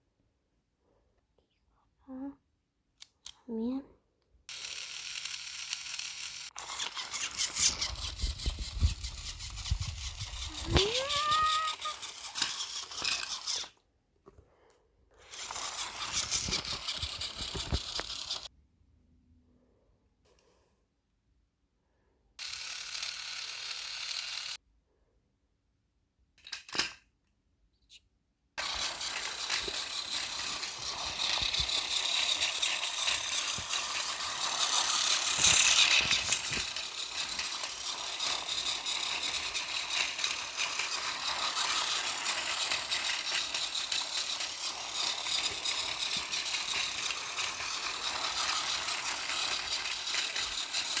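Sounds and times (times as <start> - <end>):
toy train motor and gears rattling: 4.5 - 13.8, 15.2 - 18.5, 22.4 - 24.6, 26.4 - 27.0, 28.6 - 51.0.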